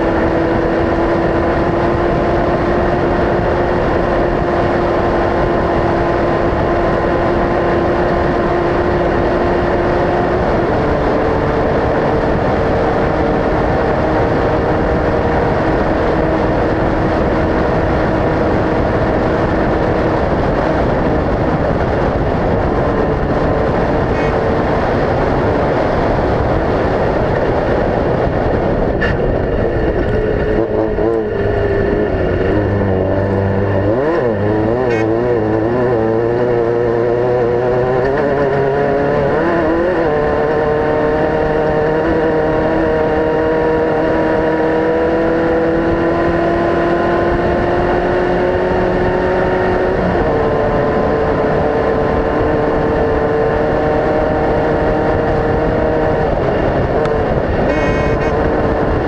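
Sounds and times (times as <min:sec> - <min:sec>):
race vehicle engine running hard: 0:00.0 - 0:59.0
loud rushing noise: 0:20.9 - 0:36.1.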